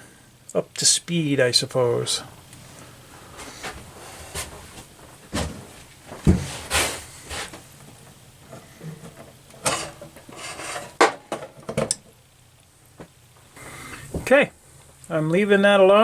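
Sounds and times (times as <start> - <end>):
scrapes and rubs on workbench: 6.4 - 7.6, 9.6 - 11.0.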